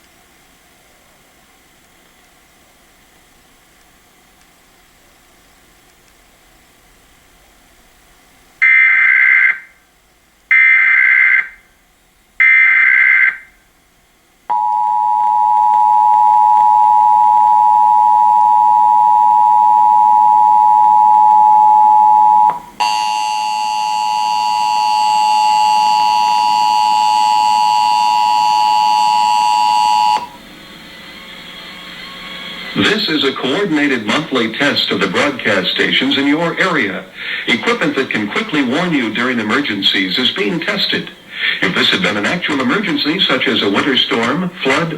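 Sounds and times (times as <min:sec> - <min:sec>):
two-tone attention signal: 0:14.5 - 0:30.4.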